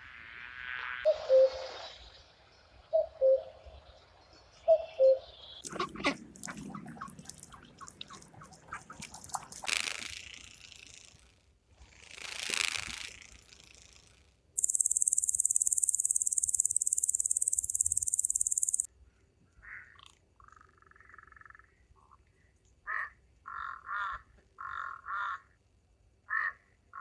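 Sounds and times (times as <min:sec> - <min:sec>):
insect trilling buzz: 0:09.6 - 0:18.9
scattered clicks: 0:14.6 - 0:18.9.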